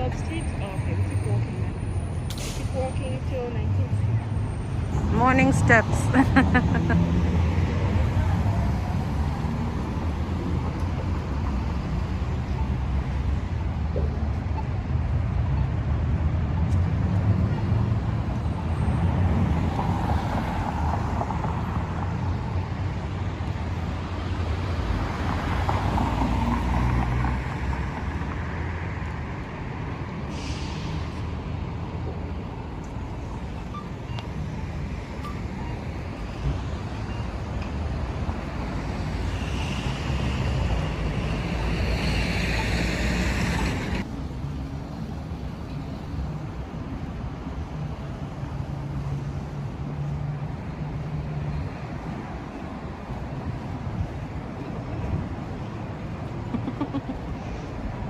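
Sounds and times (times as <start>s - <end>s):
road traffic rumble: 0.0s - 58.0s
air brakes hissing: 2.2s - 2.8s, 30.2s - 31.3s.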